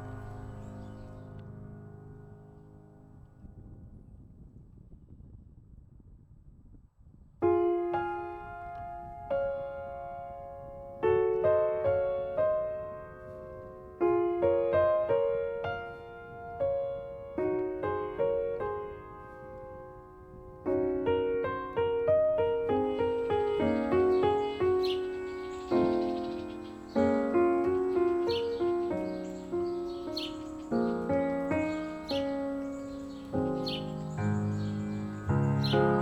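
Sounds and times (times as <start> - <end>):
slow piano melody: 0.0 - 4.5, 7.4 - 36.0
faint low rumble: 0.0 - 7.4.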